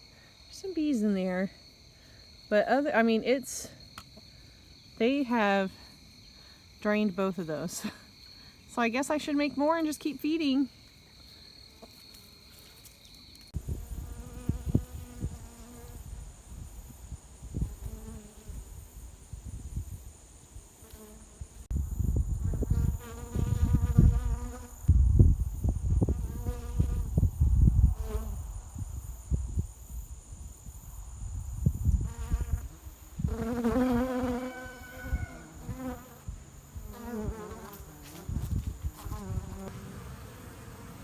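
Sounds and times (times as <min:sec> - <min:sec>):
honeybees buzzing: 0:13.6 - 0:16.2, 0:32.1 - 0:41.0.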